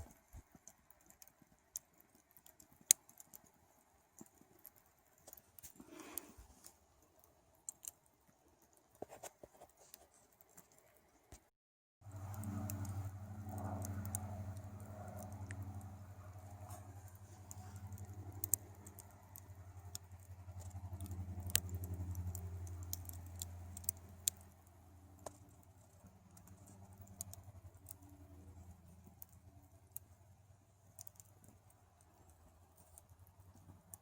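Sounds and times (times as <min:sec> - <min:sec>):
campfire crackling and popping: 0:00.0 - 0:11.0, 0:12.1 - 0:34.0.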